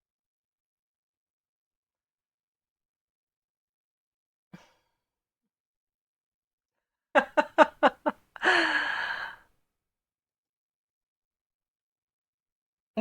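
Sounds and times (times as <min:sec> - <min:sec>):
woman breathy sigh: 0:08.4 - 0:09.5.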